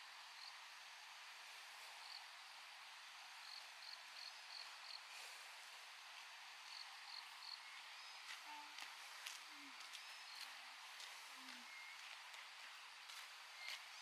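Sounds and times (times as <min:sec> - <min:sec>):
steady high hiss: 0:00.0 - 0:14.0
insects chirping: 0:03.4 - 0:05.0.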